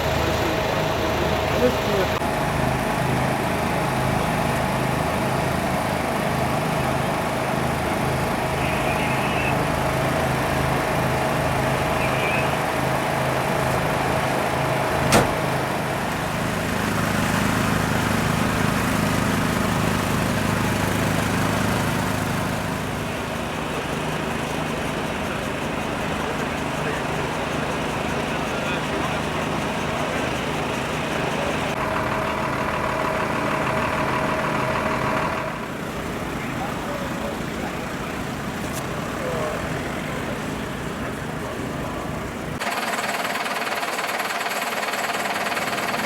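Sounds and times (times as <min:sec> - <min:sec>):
engine running: 0:00.0 - 0:46.0.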